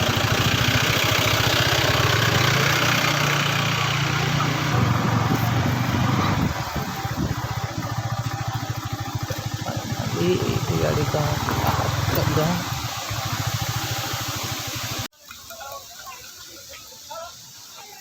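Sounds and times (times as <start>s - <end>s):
vehicle engine running: 0.0s - 15.1s
wind on microphone: 4.7s - 8.1s.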